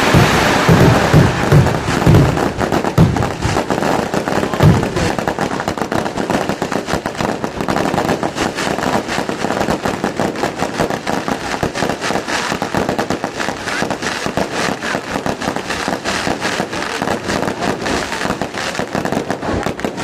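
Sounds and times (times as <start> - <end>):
deep firework booms: 0.0 - 20.0
rapid firecracker bangs: 0.0 - 20.0.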